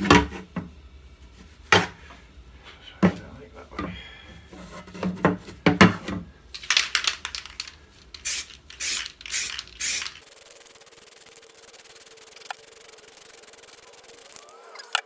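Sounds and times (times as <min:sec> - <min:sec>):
aerosol can spraying: 0:06.7 - 0:14.6.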